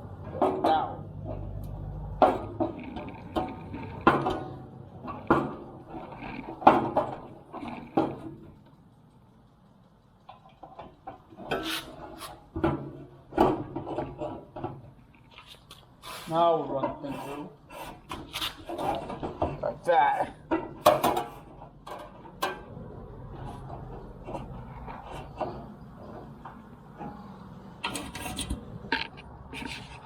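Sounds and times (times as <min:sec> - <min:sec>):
grill parts knocking and clunking: 0:00.2 - 0:08.8, 0:10.2 - 0:15.8, 0:17.7 - 0:29.8.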